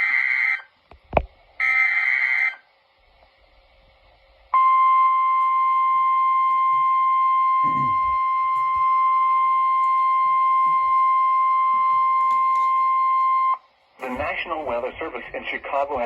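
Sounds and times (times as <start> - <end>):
loud steady electronic alert tone: 0.0 - 0.7, 1.6 - 2.6, 4.6 - 14.4.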